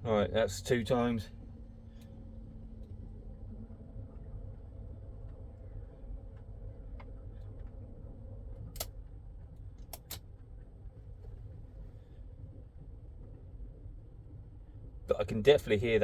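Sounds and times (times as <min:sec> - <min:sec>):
sharp clicks: 0:09.8 - 0:10.2.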